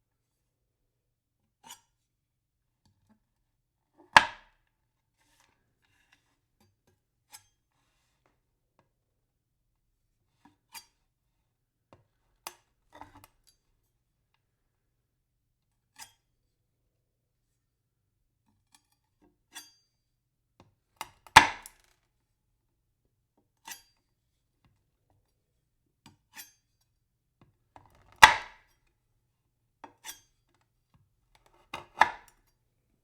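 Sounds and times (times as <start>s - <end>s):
knife chopping on wood: 4.2s - 4.5s, 21.4s - 21.8s, 28.2s - 28.6s, 31.7s - 32.4s.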